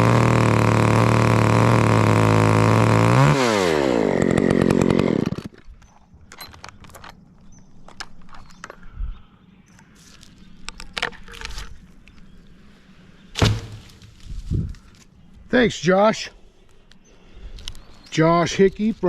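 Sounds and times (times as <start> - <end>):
chainsaw engine running: 0.0 - 5.6
dull thump: 13.4 - 14.2.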